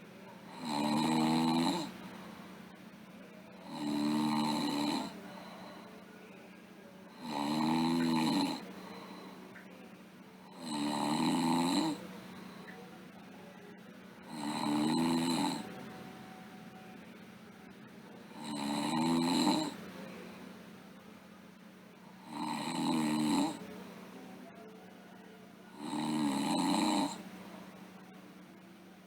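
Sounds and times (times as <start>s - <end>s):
girl snoring: 0.5s - 2.0s, 3.6s - 5.2s, 7.1s - 9.2s, 10.5s - 12.5s, 14.3s - 15.7s, 18.3s - 19.8s, 22.2s - 23.6s, 25.8s - 27.2s.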